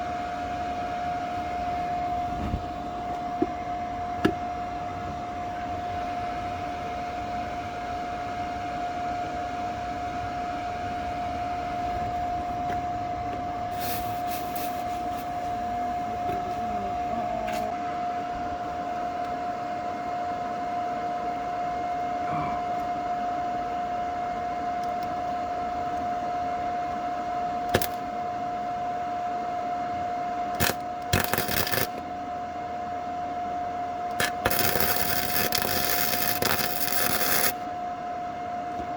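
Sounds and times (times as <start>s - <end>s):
welder frying hiss: 13.7s - 15.6s, 27.7s - 28.0s, 30.6s - 32.0s, 34.2s - 37.6s
constant high tone: 15.1s - 18.3s, 22.1s - 23.2s
sharp welding crackles: 27.7s - 28.0s, 30.6s - 32.0s, 34.2s - 37.6s.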